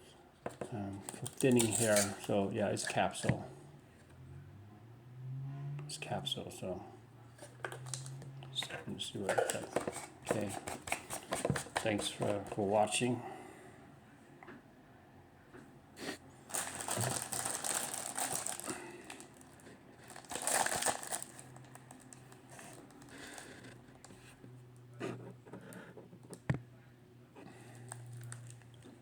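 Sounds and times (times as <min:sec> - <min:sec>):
packaging crinkling and rustling: 0:00.6 - 0:02.5, 0:07.4 - 0:12.9, 0:16.4 - 0:24.2, 0:27.9 - 0:29.0.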